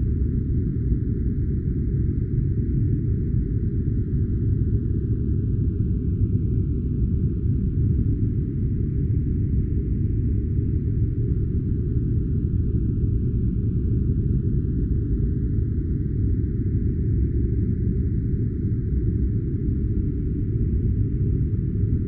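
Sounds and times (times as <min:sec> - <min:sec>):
low-filtered white noise: 0:00.0 - 0:22.0.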